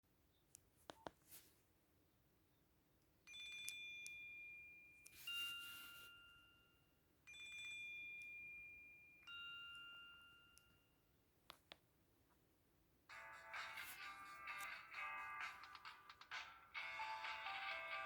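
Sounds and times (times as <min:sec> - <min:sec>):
phone ringtone bell tones: 0:03.3 - 0:10.9, 0:16.8 - 0:18.0.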